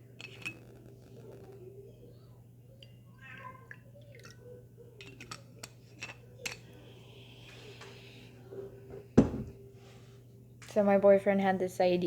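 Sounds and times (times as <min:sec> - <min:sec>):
low steady hum: 0:00.0 - 0:12.0
bottle set down thud: 0:08.9 - 0:09.5.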